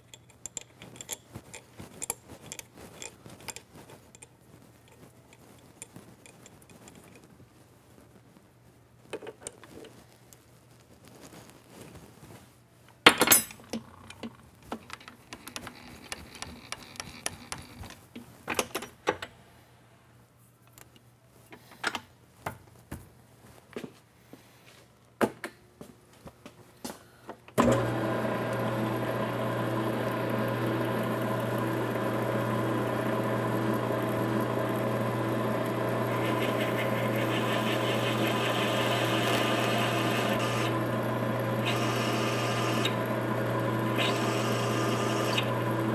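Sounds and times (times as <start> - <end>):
tools and metal clicking: 0.0 - 7.2
metal lathe humming: 27.6 - 45.9.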